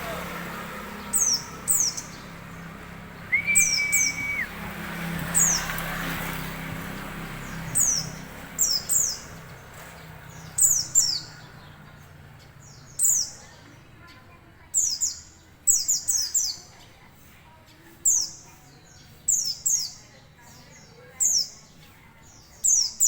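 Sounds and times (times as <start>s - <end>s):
whistled note: 3.3s - 4.5s
bird calling high notes: 3.3s - 4.6s.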